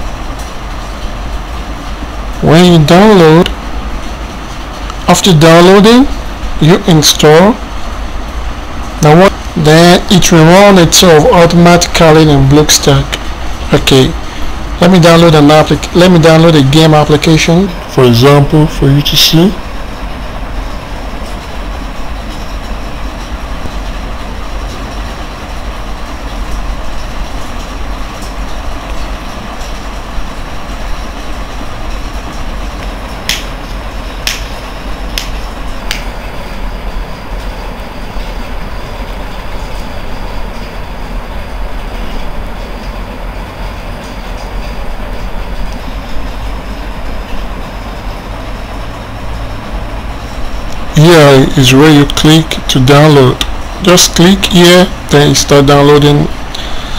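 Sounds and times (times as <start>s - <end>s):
rumbling background noise: 0.0s - 56.9s
sharp clicks: 32.8s - 33.5s, 34.2s - 36.1s.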